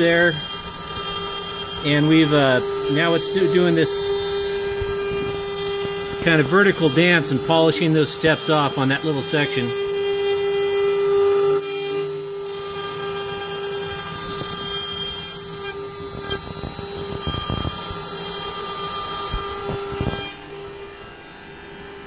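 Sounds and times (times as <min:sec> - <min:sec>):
cnc spindle whine: 0:00.0 - 0:22.0.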